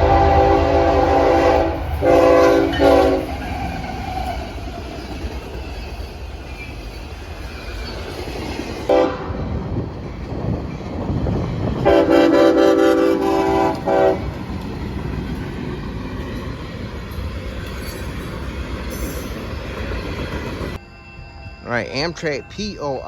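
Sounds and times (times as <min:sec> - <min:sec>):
train horn blast: 0:00.0 - 0:03.5, 0:08.9 - 0:09.4, 0:11.8 - 0:14.4
train rolling rumble: 0:00.0 - 0:23.0.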